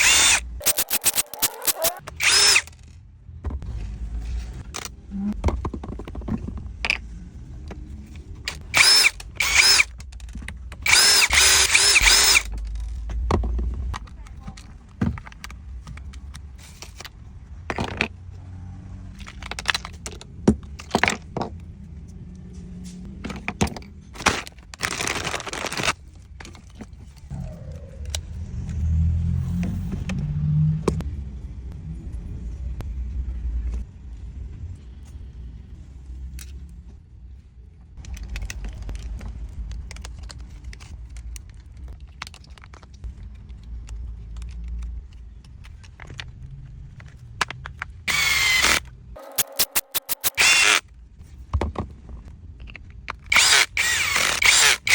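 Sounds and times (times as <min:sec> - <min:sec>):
plastic and metal parts clicking: 0:00.0 - 0:03.0, 0:38.0 - 0:50.8.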